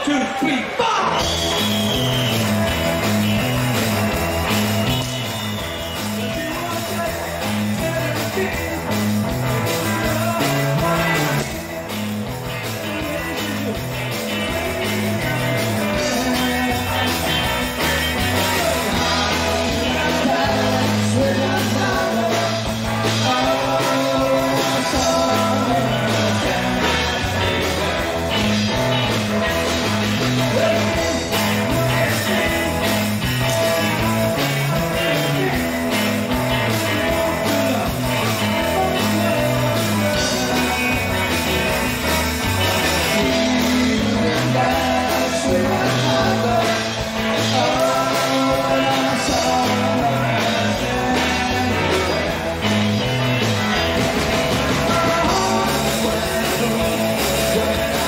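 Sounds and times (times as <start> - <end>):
drums: 0.0 - 58.0
electric guitar: 0.0 - 58.0
walking bass line: 1.1 - 58.0
person singing: 6.0 - 11.7, 12.6 - 29.3, 33.6 - 41.9, 42.6 - 58.0.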